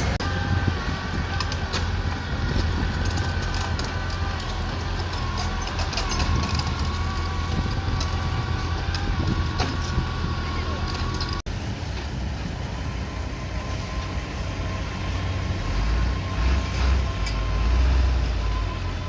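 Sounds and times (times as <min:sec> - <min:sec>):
diesel engine rumble with whine: 0:00.0 - 0:19.0
light clanks and clicks: 0:01.3 - 0:11.4.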